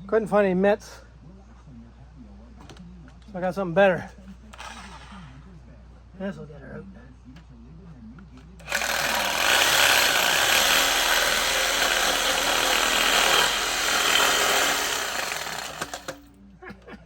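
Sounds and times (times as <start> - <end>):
handheld power tool running: 8.6 - 16.3.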